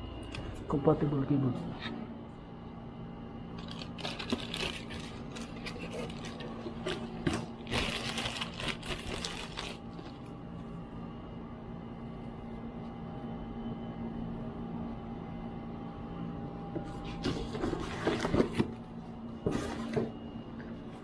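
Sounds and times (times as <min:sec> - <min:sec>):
steady background hum: 0:00.0 - 0:21.0
laptop parts clicking and scraping: 0:03.6 - 0:07.1.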